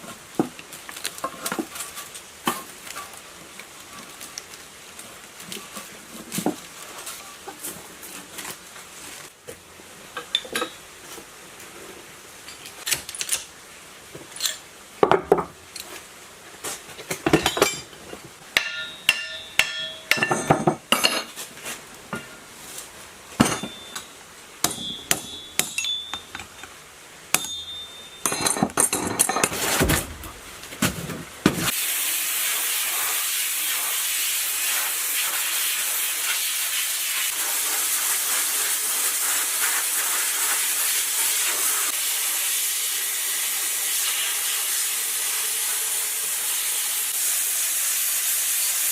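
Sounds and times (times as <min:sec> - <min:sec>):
steady hiss: 0:00.0 - 0:48.9
metal tools knocking and clinking: 0:10.2 - 0:10.8, 0:17.2 - 0:18.0, 0:18.6 - 0:21.3, 0:23.4 - 0:24.1, 0:24.7 - 0:26.8, 0:27.4 - 0:29.6.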